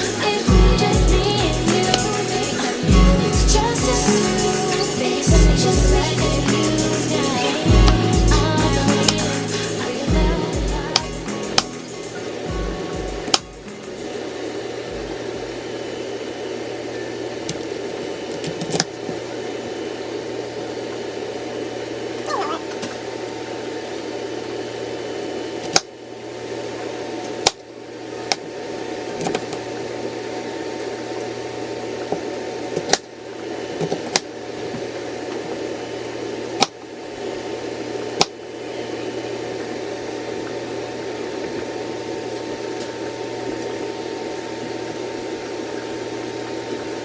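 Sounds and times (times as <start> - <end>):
air fryer fan whirring: 0.0 - 47.0.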